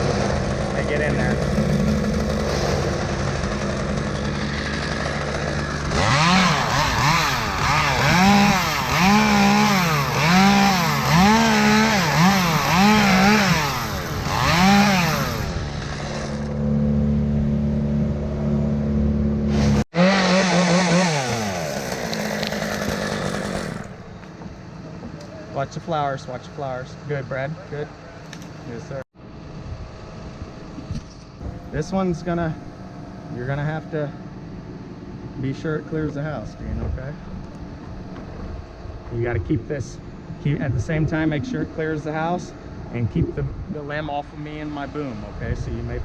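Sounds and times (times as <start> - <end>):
chainsaw revving: 0.0 - 16.8, 19.4 - 24.0.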